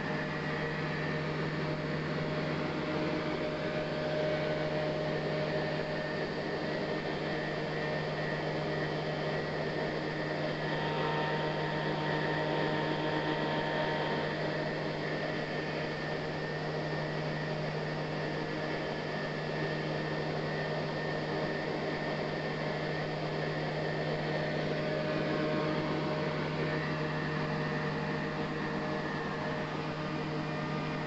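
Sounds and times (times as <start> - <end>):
grinder motor humming: 10.4 - 15.2.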